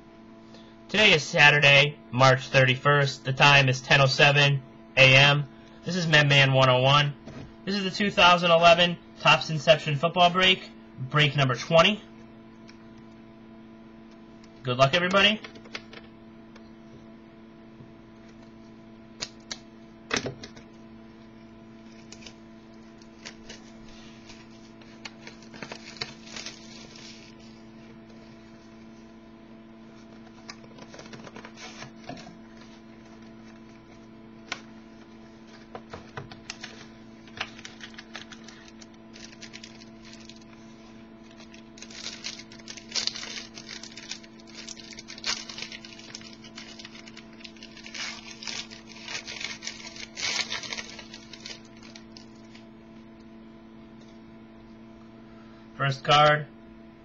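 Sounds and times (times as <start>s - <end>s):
steady electrical hum: 0.0s - 57.0s
cardboard and wrapping rustling: 35.5s - 52.6s.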